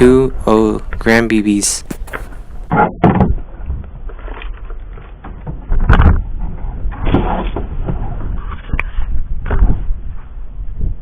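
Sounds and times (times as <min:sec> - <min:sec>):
handling knocks and scrapes: 0:01.8 - 0:02.9.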